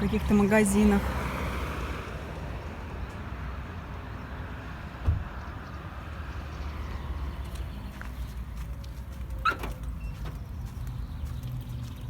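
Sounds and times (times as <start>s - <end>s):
low vehicle rumble: 0.0s - 12.0s
thump: 5.0s - 5.3s.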